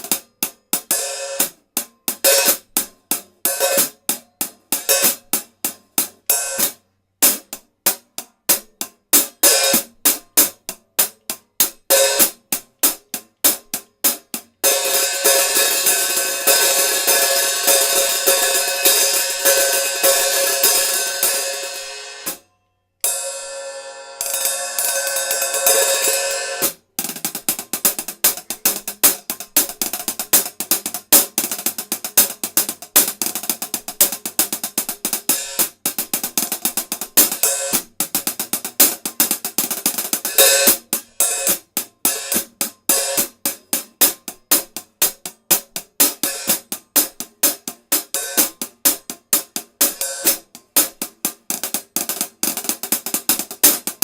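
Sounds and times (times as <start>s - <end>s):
hi-hat cymbals playing: 14.6s - 22.4s, 23.0s - 54.0s.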